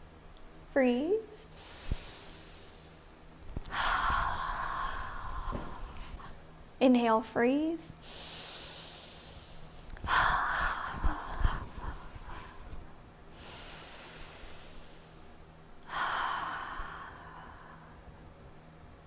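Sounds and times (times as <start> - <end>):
woman breathing deeply: 1.5 - 6.6, 8.0 - 18.2
soft low thumps: 3.4 - 6.5, 10.0 - 13.0.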